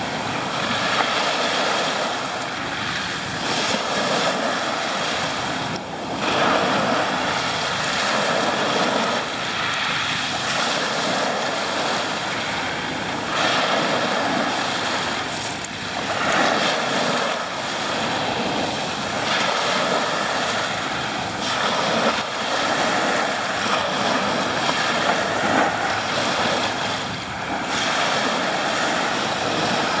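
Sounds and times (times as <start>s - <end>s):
sea waves washing onto shore: 0.0s - 30.0s.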